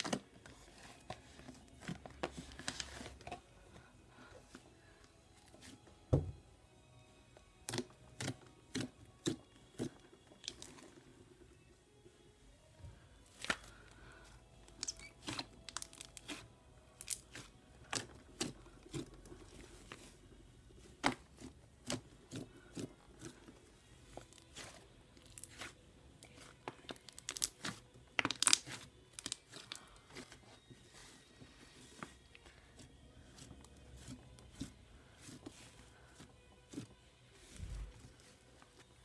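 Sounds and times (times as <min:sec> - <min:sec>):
slime popping and crackling: 0:26.3 - 0:29.8.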